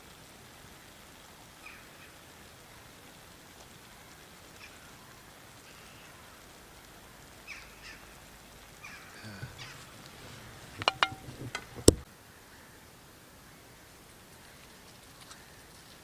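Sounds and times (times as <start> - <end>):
faint bird calls: 1.6 - 2.2, 4.6 - 6.5, 7.4 - 13.0
sharp clicks and knocks: 10.6 - 12.1.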